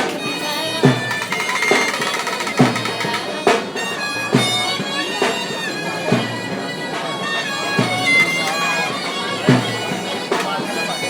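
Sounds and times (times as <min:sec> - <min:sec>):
reedy wind instrument melody: 0:00.0 - 0:11.0
steady drum beat: 0:00.0 - 0:11.0.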